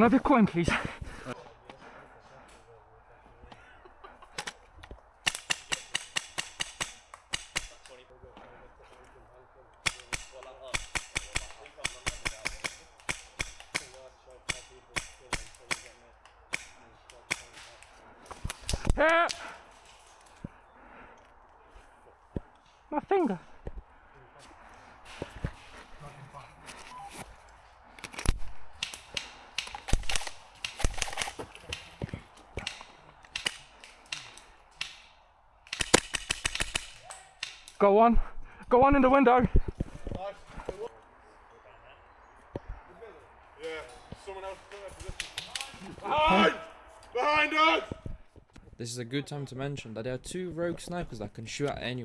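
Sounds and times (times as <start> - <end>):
airsoft guns firing: 5.2 - 8.0, 9.8 - 19.9, 28.1 - 37.8, 44.6 - 46.6.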